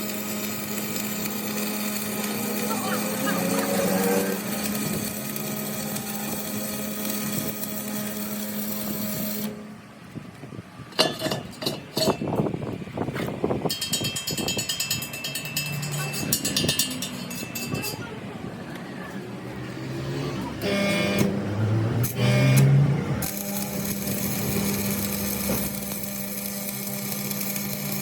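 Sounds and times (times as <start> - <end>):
power tool running: 0.0 - 9.7, 19.6 - 28.0.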